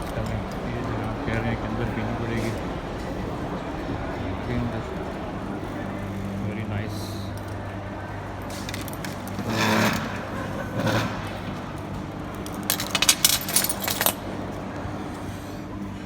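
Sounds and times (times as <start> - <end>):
metallic clinks and jangles: 8.4 - 9.4, 12.3 - 14.2.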